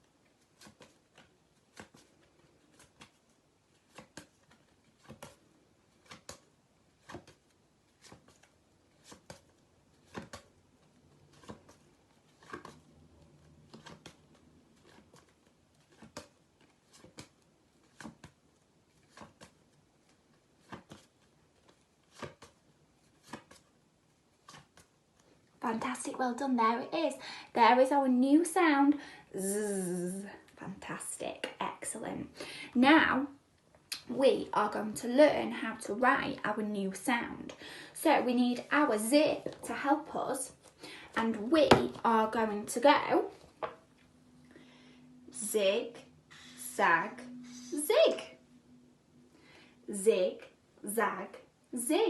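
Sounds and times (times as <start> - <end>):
cards flipping with soft clicks: 0.1 - 25.4.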